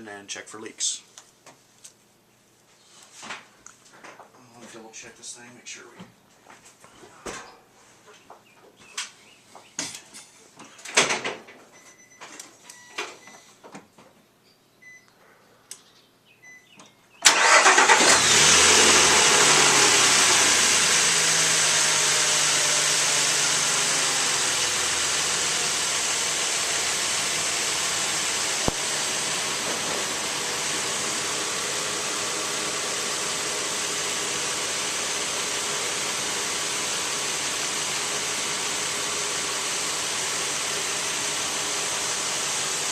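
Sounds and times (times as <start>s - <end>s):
truck engine starting and idling: 17.2s - 42.9s.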